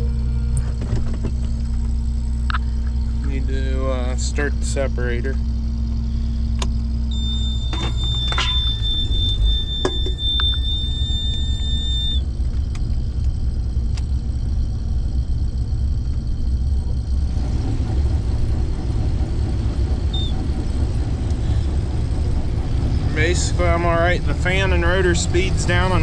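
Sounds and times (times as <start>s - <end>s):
combine harvester rumbling: 0.0s - 26.0s
high warning tone: 7.1s - 12.3s, 20.0s - 26.0s.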